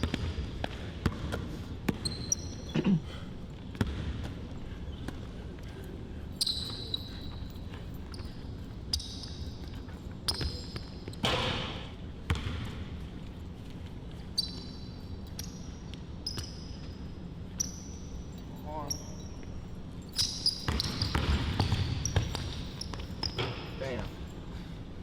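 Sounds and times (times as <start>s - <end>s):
basketball dribbling thumps: 0.0s - 2.2s, 3.7s - 5.3s, 10.3s - 12.9s, 20.6s - 23.7s
sneakers squeaking: 0.0s - 25.0s.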